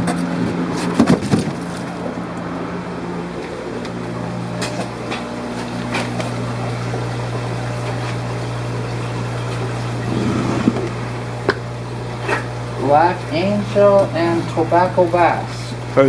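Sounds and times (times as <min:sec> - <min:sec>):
pumps humming and hissing: 0:00.0 - 0:16.0.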